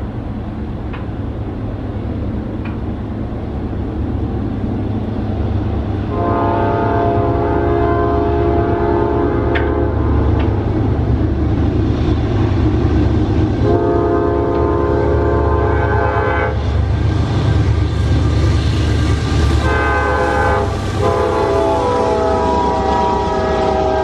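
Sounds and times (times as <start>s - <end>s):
train deep rumble: 0.0s - 24.0s
locomotive air horn blasts: 6.1s - 10.0s, 13.6s - 16.6s, 19.6s - 24.0s.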